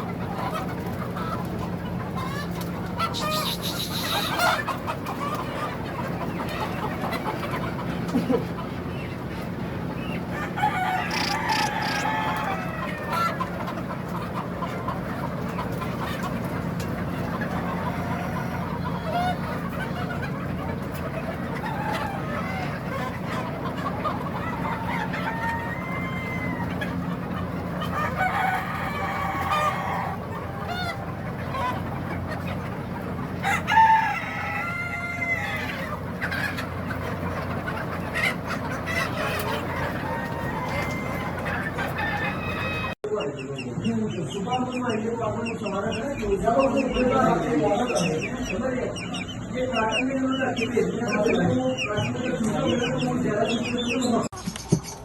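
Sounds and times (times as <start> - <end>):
chickens clucking: 0.0 - 55.0
rooster crowing: 10.3 - 13.1, 25.3 - 26.7, 33.4 - 35.7, 39.9 - 43.0.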